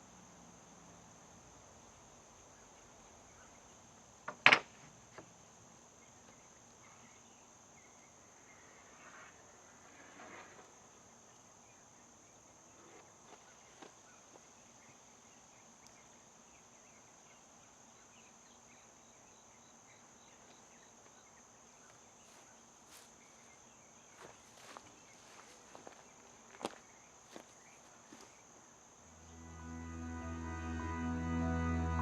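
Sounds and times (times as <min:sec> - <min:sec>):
high-pitched whine: 0:29.1 - 0:32.0.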